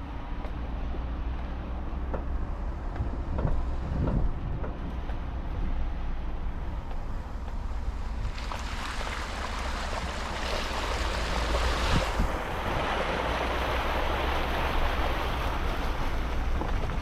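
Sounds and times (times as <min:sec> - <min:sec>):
vehicle engine and road rumble: 0:00.0 - 0:17.0
vehicle knocks and bumps: 0:01.4 - 0:05.7, 0:16.4 - 0:17.0.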